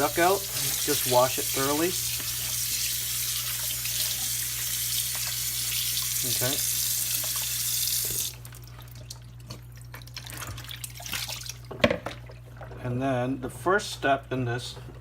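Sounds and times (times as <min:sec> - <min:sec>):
tap water running into sink: 0:00.0 - 0:08.4.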